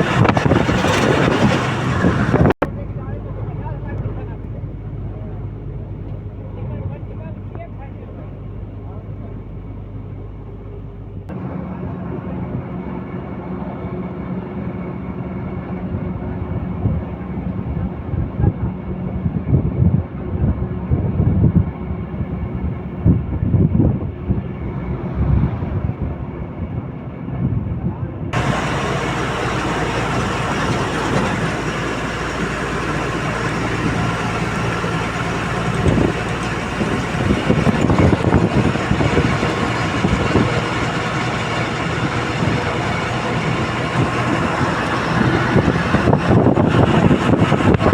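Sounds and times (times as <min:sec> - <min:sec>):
low buffeting bumps: 0:00.0 - 0:10.3, 0:15.9 - 0:47.9
road rumble: 0:00.0 - 0:47.9
vehicle engine hum: 0:00.0 - 0:47.9.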